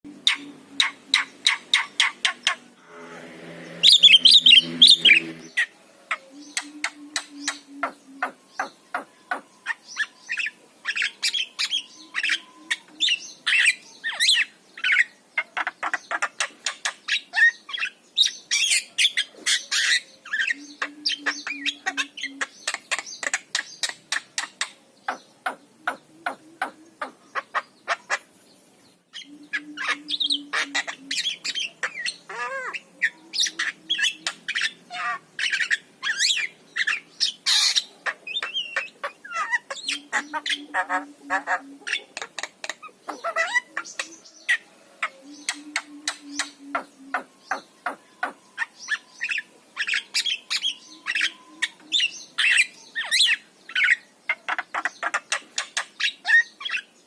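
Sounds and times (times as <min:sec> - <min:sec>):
myna bird singing: 0:00.0 - 0:57.0.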